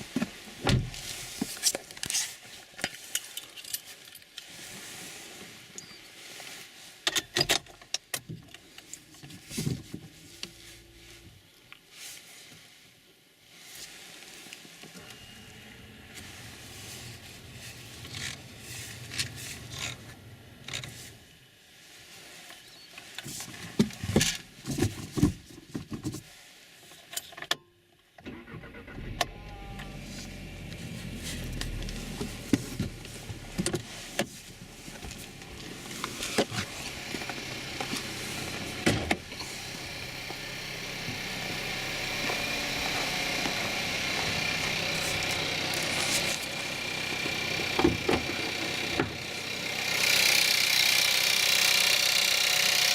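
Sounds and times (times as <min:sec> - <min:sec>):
engine idling with rattle: 0:13.6 - 0:21.4, 0:28.2 - 0:52.9
car engine cold starting: 0:14.8 - 0:21.2, 0:28.2 - 0:52.9.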